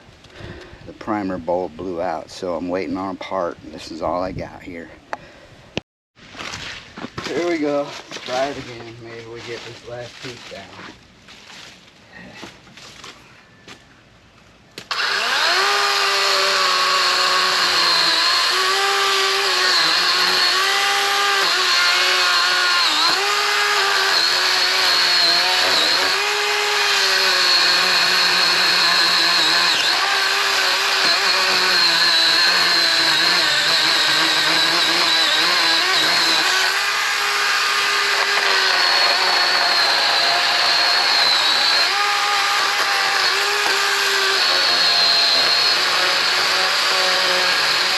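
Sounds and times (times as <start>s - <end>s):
electric chainsaw cutting wood: 14.8s - 47.9s.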